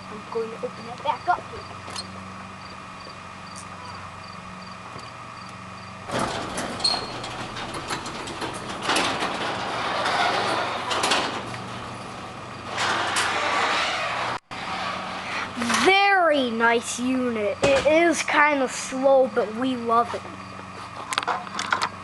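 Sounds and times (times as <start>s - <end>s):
garage door opener motor and chain: 3.5s - 16.6s
garage door clattering: 5.9s - 16.3s.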